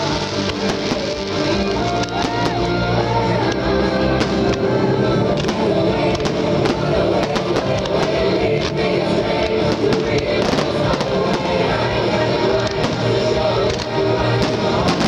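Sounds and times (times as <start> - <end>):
firework bangs and crackles: 0.0 - 15.0
loud music: 0.0 - 15.0.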